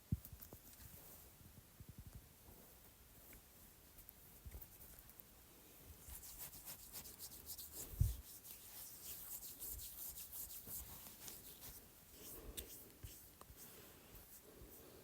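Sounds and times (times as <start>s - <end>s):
cream rubbing strokes: 5.9s - 15.0s.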